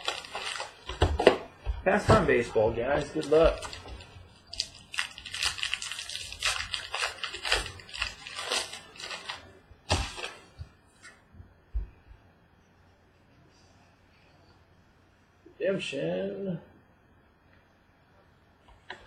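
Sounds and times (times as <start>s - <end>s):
packaging crinkling and rustling: 0.0s - 11.1s.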